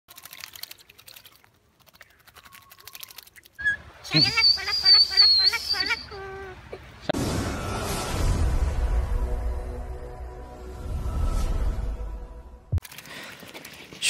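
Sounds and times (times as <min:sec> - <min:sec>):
bird chattering: 0:02.0 - 0:06.1
bird whistling: 0:03.6 - 0:06.2.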